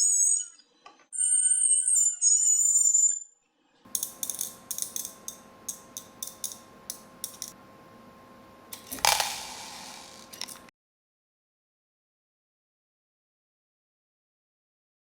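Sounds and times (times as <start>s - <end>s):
small mechanism clicking: 3.9s - 7.6s
faint steady hum: 3.9s - 10.7s.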